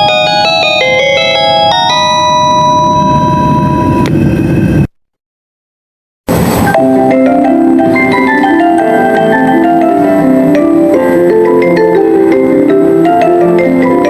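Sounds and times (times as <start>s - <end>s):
bell-like announcement chime melody: 0.0s - 4.1s.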